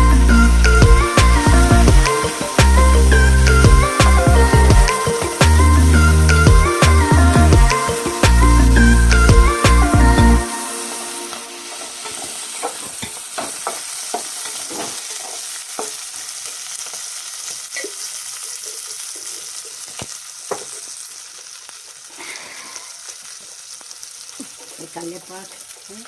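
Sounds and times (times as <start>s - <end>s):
food sizzling in oil: 0.0s - 26.0s
spoon knocking on pan: 12.0s - 16.0s.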